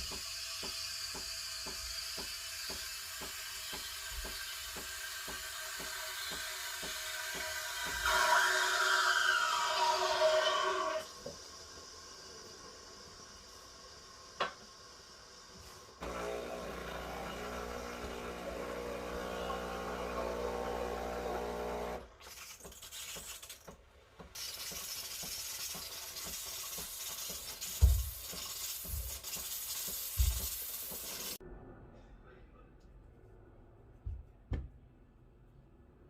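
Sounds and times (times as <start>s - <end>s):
espresso machine pump humming: 16.0s - 22.0s.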